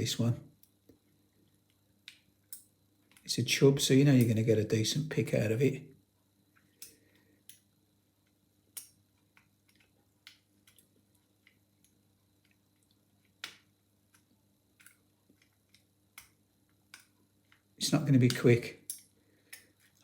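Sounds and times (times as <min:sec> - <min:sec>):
lock pick clicks and ticks: 0:18.3 - 0:19.7.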